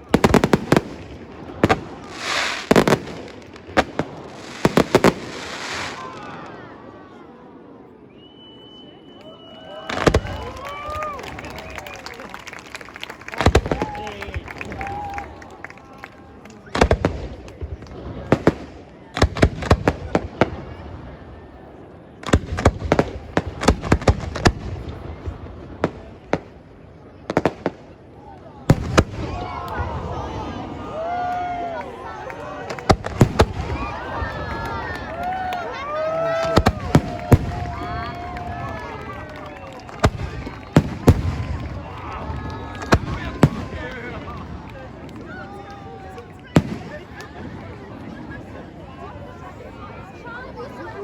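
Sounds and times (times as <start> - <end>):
fireworks hissing crackle: 0.0 - 6.4
fireworks exploding: 0.0 - 6.6, 9.8 - 15.5, 16.6 - 21.2, 21.8 - 48.7.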